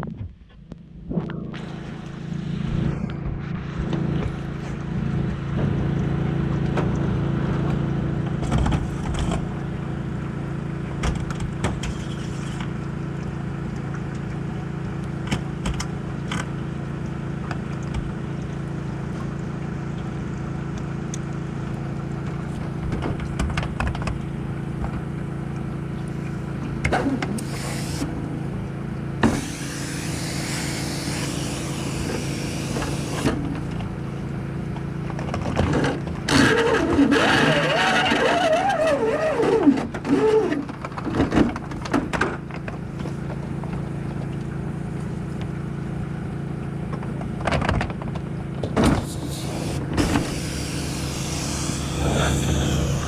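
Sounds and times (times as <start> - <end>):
pressure washer running: 24.2 - 35.1, 48.8 - 53.0
spray hissing: 27.4 - 28.1, 29.3 - 33.3, 49.0 - 53.0.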